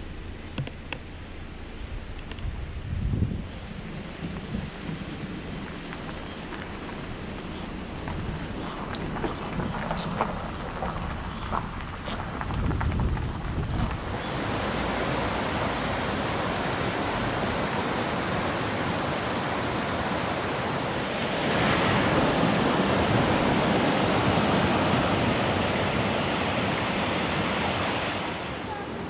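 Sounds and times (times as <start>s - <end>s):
mountain stream rushing: 13.8s - 29.0s.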